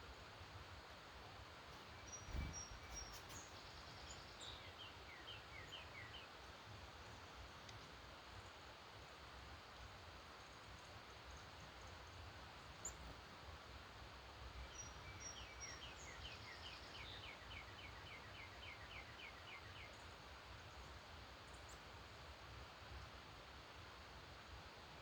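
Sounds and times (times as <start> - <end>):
faint background noise: 0.0 - 25.0
songbird singing downslurred notes: 1.8 - 6.3, 14.6 - 20.0.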